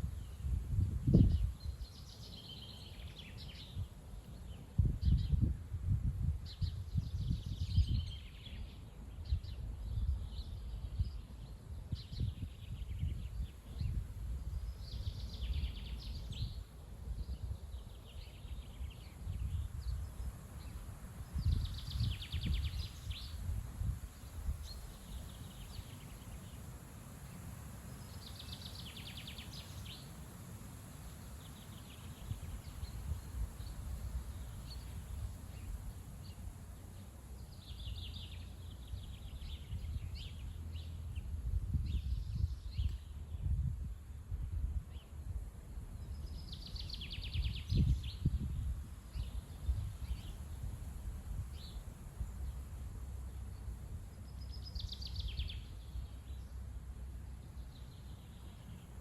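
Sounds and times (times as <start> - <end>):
wind buffeting microphone: 0.0 - 25.8, 37.4 - 52.7
songbird singing trilled phrases: 0.1 - 5.6, 6.4 - 23.5, 27.9 - 30.1, 31.2 - 43.7, 45.9 - 50.7, 53.2 - 56.7.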